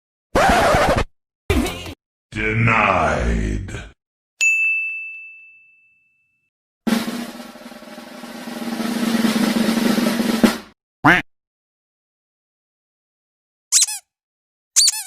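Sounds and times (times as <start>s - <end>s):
bell-like ding: 4.4s - 6.5s
snare drum roll: 6.9s - 10.8s.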